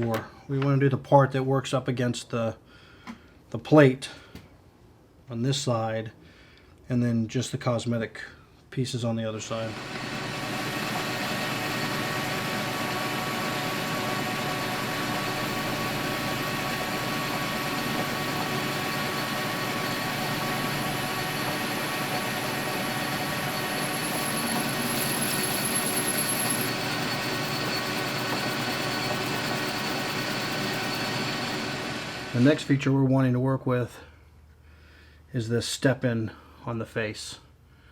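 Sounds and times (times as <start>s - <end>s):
metal lathe hum: 9.6s - 32.8s
thin high whine: 14.8s - 32.6s.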